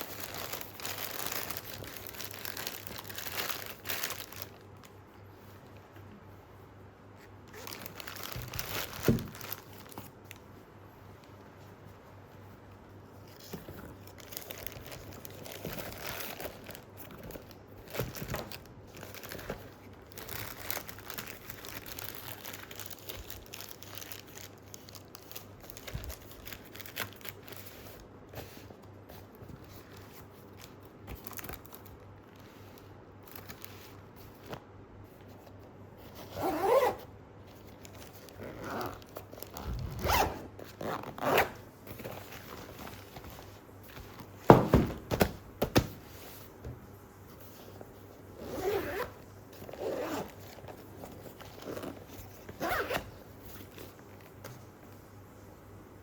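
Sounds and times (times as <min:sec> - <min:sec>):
fabric rustling and scraping: 0:35.2 - 0:37.0, 0:37.6 - 0:46.6, 0:47.2 - 0:54.0
zipper being run: 0:38.4 - 0:41.5.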